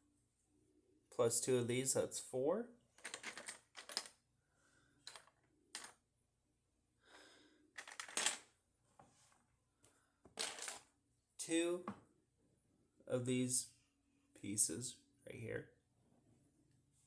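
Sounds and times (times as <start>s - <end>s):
plastic bricks clacking: 3.0s - 4.1s, 5.1s - 5.9s, 7.8s - 8.4s.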